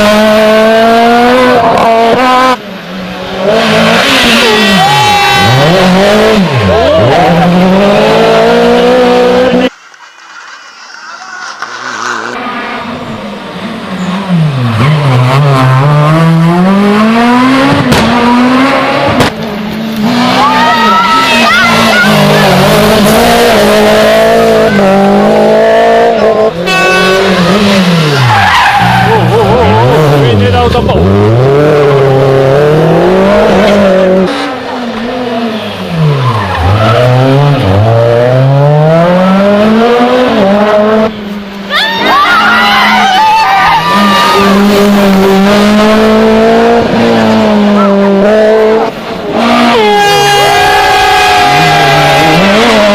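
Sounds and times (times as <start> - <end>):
rally car engine revving: 0.0 - 42.2, 42.8 - 52.9.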